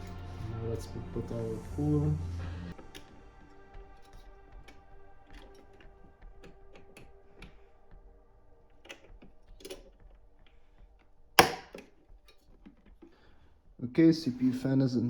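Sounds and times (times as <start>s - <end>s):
faint background music: 0.0s - 15.0s.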